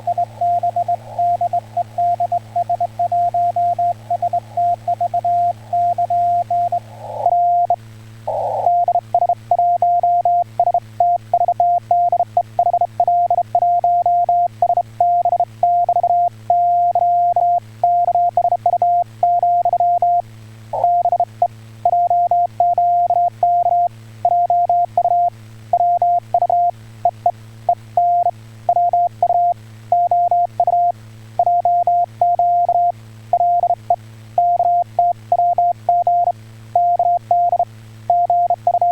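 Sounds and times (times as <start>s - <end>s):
low steady hum: 0.0s - 38.9s
morse code beeps: 20.8s - 21.3s, 21.9s - 26.7s, 28.0s - 33.8s, 34.4s - 38.9s.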